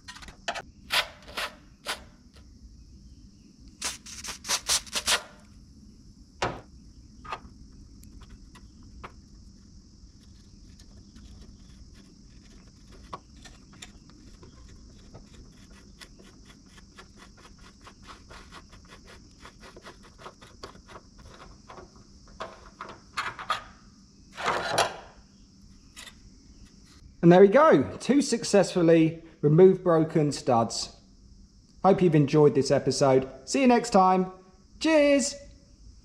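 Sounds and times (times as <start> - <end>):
steady high hiss: 1.4 - 13.1, 25.1 - 36.0.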